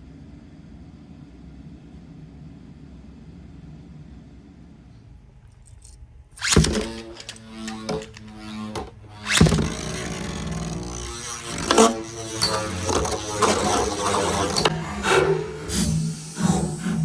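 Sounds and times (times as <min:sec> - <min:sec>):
spinning tops whirring: 0:05.6 - 0:17.0
spinning tops striking: 0:05.7 - 0:16.7.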